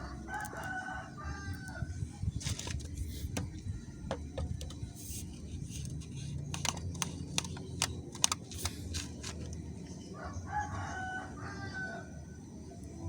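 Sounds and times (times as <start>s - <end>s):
rooster crowing: 0.0s - 1.9s, 10.1s - 12.3s.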